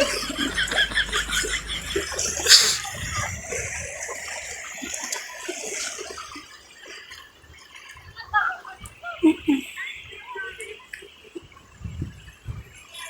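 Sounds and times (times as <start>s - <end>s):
seawater splashing in shallows: 0.0s - 9.2s.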